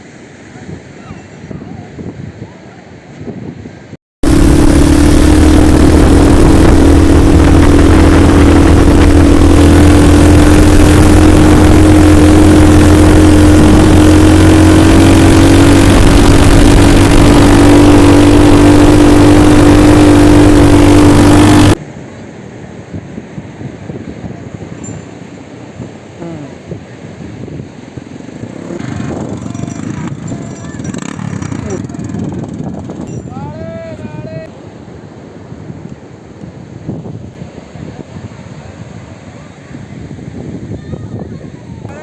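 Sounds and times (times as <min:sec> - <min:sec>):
atv engine running: 0:04.2 - 0:21.8, 0:26.2 - 0:33.4.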